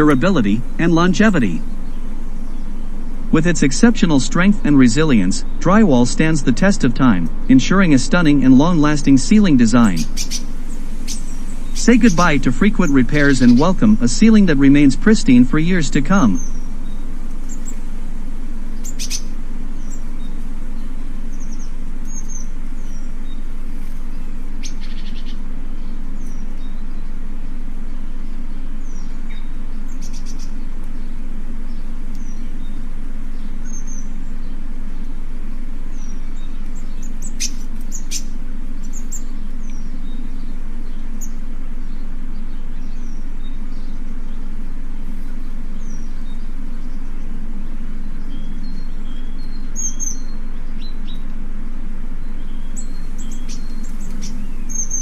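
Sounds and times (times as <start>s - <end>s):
small birds chirping: 0.0s - 55.0s
steady low hum: 0.0s - 55.0s.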